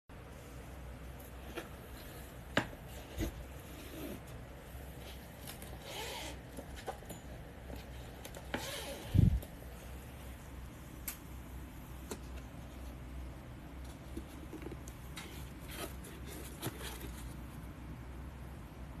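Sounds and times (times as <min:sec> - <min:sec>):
rubbing and rustling: 0:12.0 - 0:17.6.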